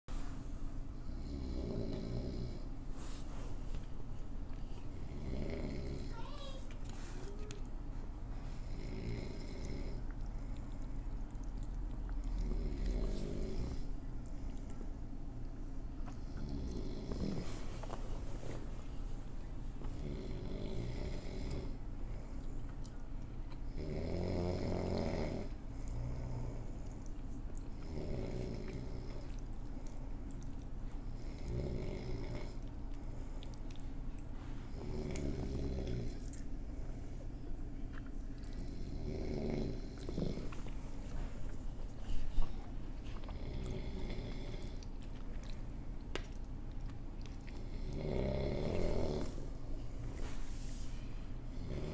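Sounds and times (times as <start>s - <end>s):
loud snoring: 1.1s - 2.6s, 5.0s - 6.2s, 8.6s - 10.0s, 16.2s - 17.5s, 20.0s - 21.8s, 23.7s - 26.7s, 27.8s - 29.2s, 31.2s - 32.6s, 34.7s - 36.2s, 38.5s - 40.5s, 43.3s - 44.8s, 47.5s - 49.4s, 51.5s - 51.9s.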